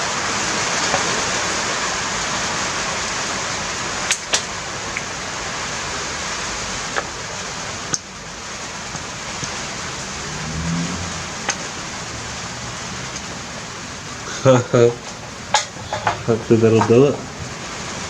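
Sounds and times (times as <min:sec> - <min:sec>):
rain hissing: 0:00.0 - 0:18.0.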